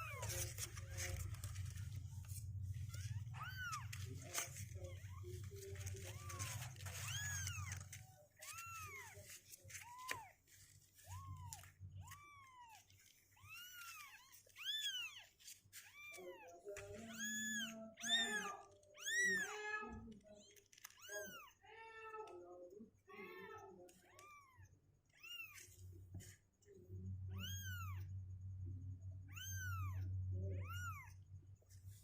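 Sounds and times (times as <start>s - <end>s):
low steady hum: 0.0s - 21.5s
kittens mewing: 0.0s - 21.7s, 29.3s - 31.2s.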